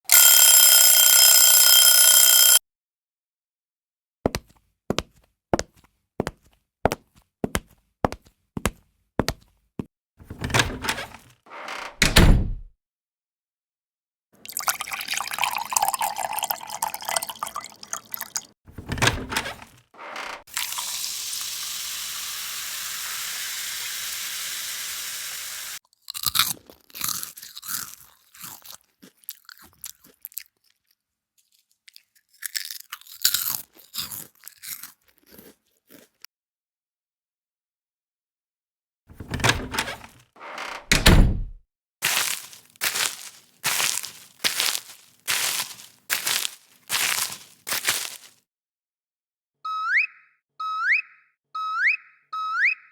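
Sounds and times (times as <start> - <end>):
low thump: 12.0 - 12.7, 41.0 - 41.6
crunching sound effects: 42.0 - 48.4.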